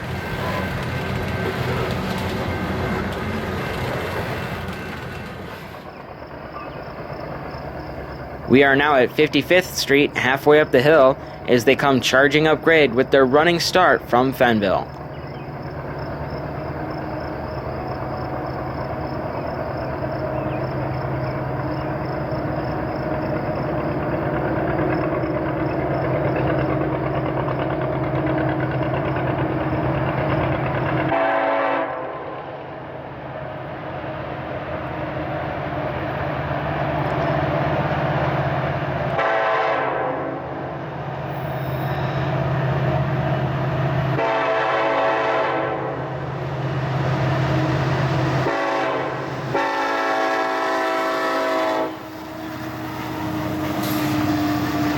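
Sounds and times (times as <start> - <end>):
locomotive engine drone: 0.0 - 54.9
locomotive horn: 31.0 - 32.4, 39.1 - 40.7, 44.1 - 46.2, 47.7 - 54.9.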